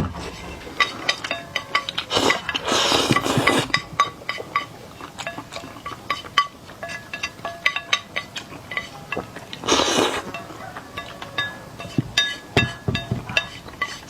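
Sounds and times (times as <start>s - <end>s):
utensils clinking against a plate: 0.0s - 14.0s.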